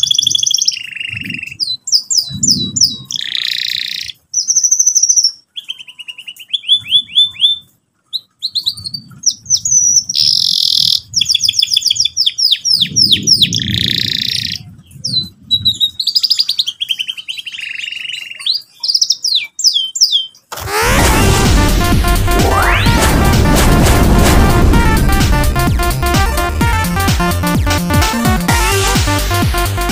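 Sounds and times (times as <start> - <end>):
canary singing: 0.0 - 20.6
low rumble: 20.6 - 29.8.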